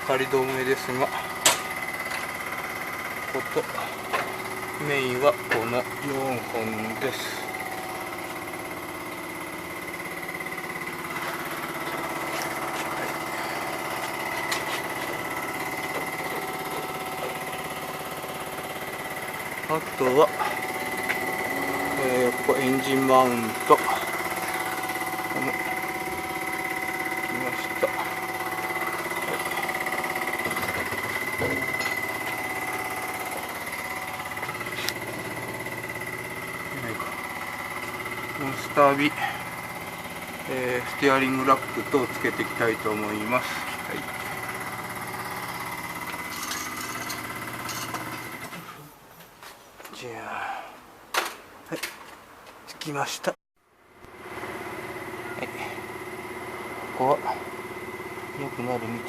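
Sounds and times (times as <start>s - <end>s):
high whine: 0.0s - 49.2s
machine humming: 0.0s - 49.4s, 53.8s - 59.0s.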